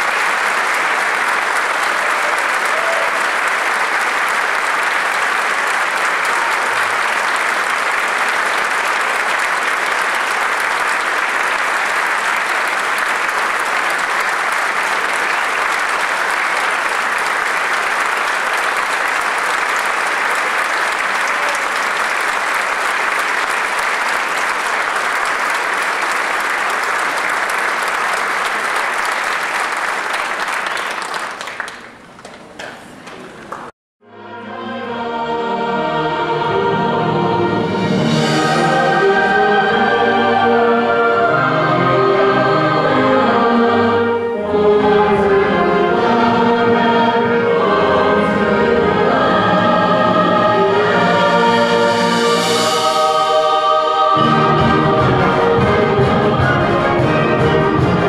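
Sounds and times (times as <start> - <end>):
audience applauding: 0.0 - 33.7.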